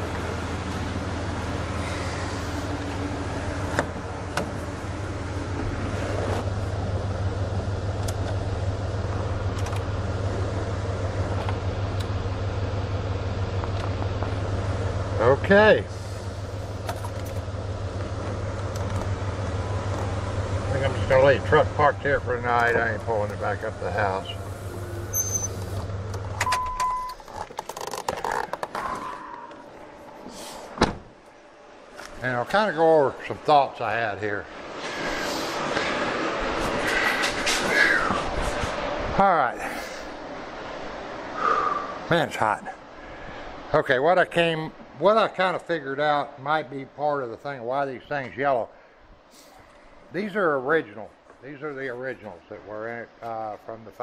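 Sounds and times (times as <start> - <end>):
pickup engine idling: 0.0 - 28.7
clicks and rustling: 27.1 - 29.0
truck door slamming: 30.7 - 31.2.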